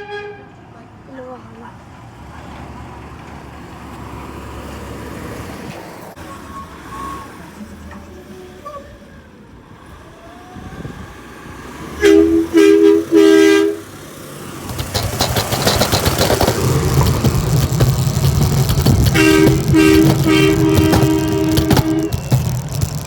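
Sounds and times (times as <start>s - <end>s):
garbage truck horn blasts: 0.0s - 0.6s, 11.9s - 14.0s, 18.9s - 22.5s
truck engine noise: 0.7s - 23.0s.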